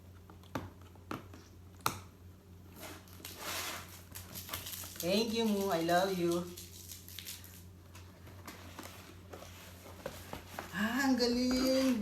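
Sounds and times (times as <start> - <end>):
packaging rustling: 2.8 - 12.0.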